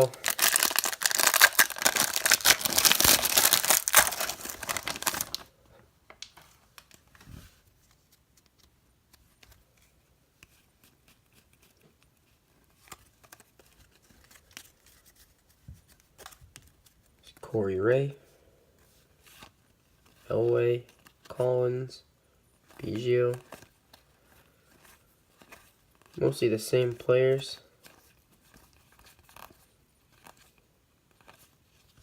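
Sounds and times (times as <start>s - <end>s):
cards being handled: 0.0s - 5.5s, 6.2s - 17.5s, 22.6s - 32.0s
wrapper tearing and crinkling: 0.0s - 5.5s.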